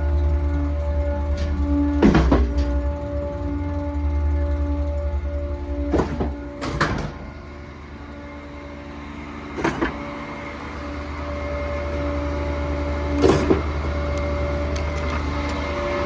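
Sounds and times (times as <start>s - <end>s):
diesel engine and hydraulics humming: 0.0s - 16.0s
short clunks: 1.4s - 3.0s, 5.8s - 7.4s, 9.5s - 10.2s, 13.0s - 15.7s.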